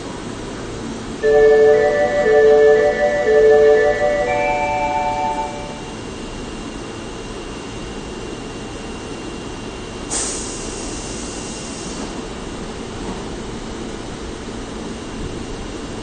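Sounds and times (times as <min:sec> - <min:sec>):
train humming: 0:01.0 - 0:06.5.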